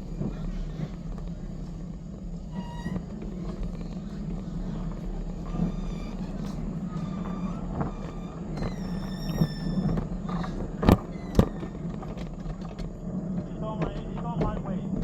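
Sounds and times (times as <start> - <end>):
model train running hum: 0.0 - 15.0
high metallic squeal: 2.5 - 11.9.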